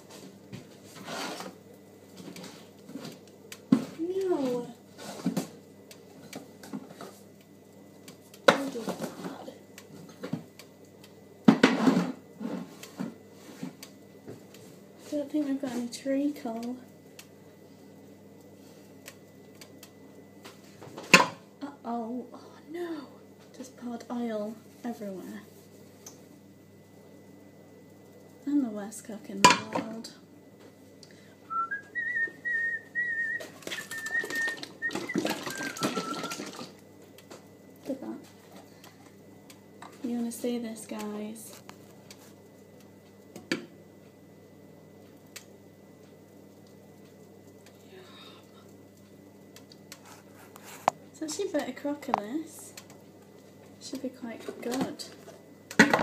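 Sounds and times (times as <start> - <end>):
kitchen clatter: 11.4 - 13.1, 21.0 - 21.4, 33.4 - 36.7
person whistling: 31.5 - 36.5.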